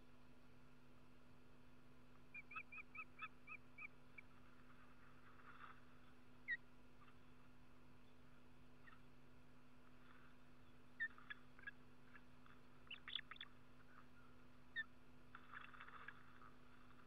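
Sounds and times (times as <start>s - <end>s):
bird calling: 2.3s - 4.3s, 5.6s - 7.3s, 10.6s - 17.0s
faint rustle: 4.1s - 17.0s.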